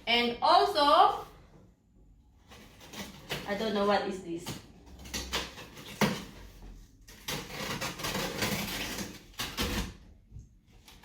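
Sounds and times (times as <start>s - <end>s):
cardboard rustling and scraping: 2.4s - 4.0s, 4.8s - 10.1s.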